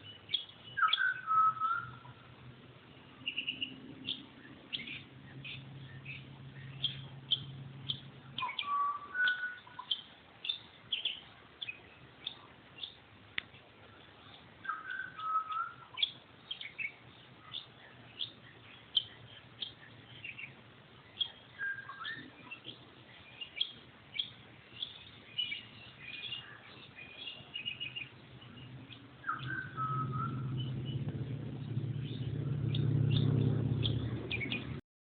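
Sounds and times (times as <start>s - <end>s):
lower whistled bird call: 0.0s - 2.3s, 4.8s - 13.0s, 14.6s - 18.3s, 21.1s - 31.0s
low steady hum: 0.0s - 34.8s
small birds chirping: 0.0s - 34.8s.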